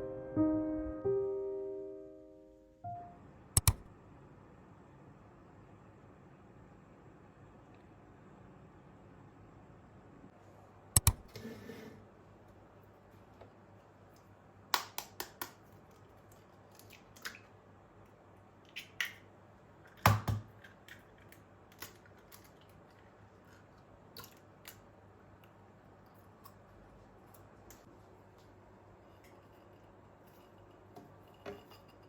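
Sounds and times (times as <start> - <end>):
small objects clicking and tapping: 18.6 - 19.3, 19.9 - 26.6.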